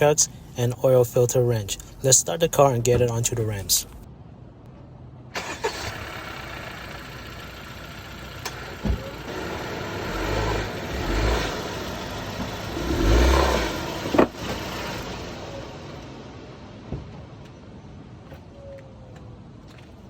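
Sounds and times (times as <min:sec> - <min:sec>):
engine throttle surges: 0:05.4 - 0:16.8
car engine running: 0:05.4 - 0:17.2.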